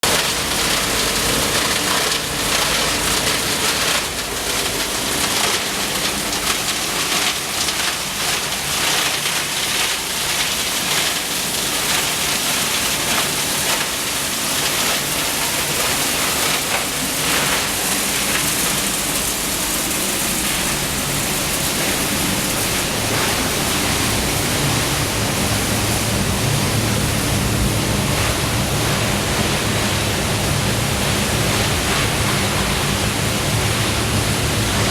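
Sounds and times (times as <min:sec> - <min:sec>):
machinery noise: 0:13.0 - 0:34.9
water rushing: 0:16.0 - 0:34.9
low motor hum: 0:19.0 - 0:34.9.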